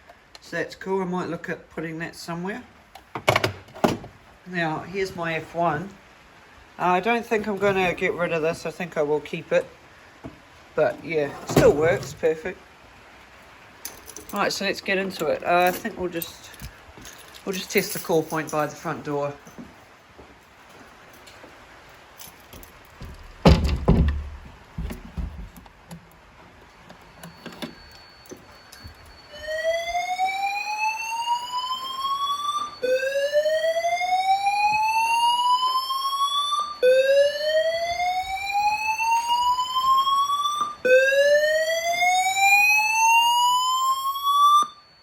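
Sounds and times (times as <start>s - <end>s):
loud thump: 23.0s - 25.5s
knocks: 23.0s - 25.6s.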